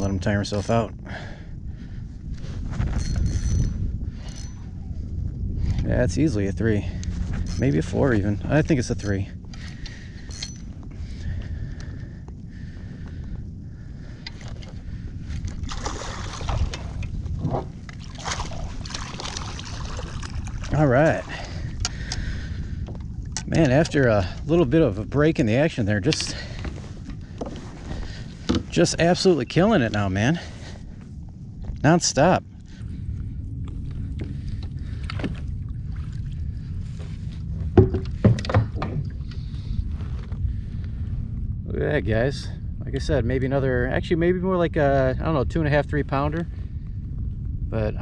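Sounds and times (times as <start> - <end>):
wind rumbling on microphone: 0.0 - 48.0
water splashing and lapping: 14.4 - 23.0, 33.6 - 39.4
knocks against kayak hull: 37.8 - 39.1.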